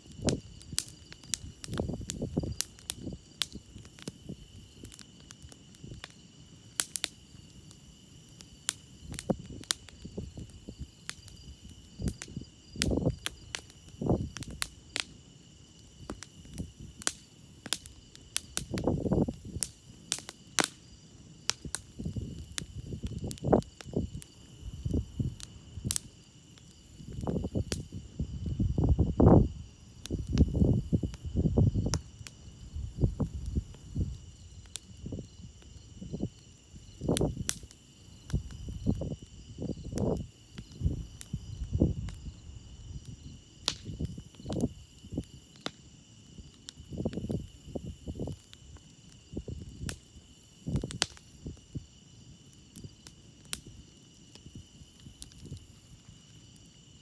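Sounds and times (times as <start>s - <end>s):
campfire crackling and popping: 0.0s - 57.0s
crickets chirping: 0.0s - 57.0s
rushing of burning fire: 0.0s - 57.0s.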